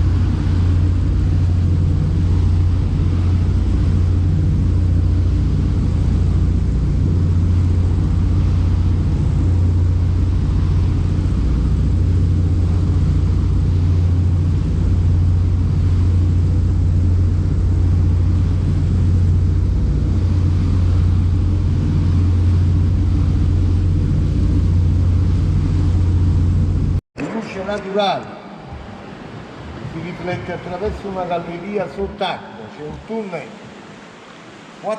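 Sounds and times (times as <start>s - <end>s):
wind noise: 0.0s - 27.0s
motorboat engine droning: 0.0s - 34.9s
water noise: 0.0s - 34.9s.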